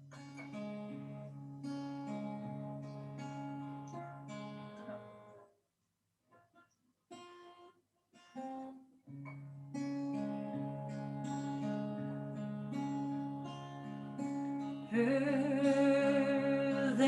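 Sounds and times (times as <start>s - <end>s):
acoustic guitar strumming: 0.0s - 5.5s, 6.4s - 17.0s
chant: 14.9s - 17.0s.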